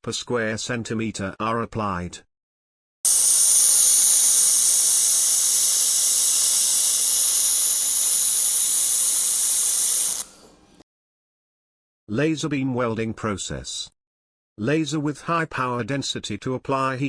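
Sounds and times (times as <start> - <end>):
laser welding hiss: 3.1 - 10.5.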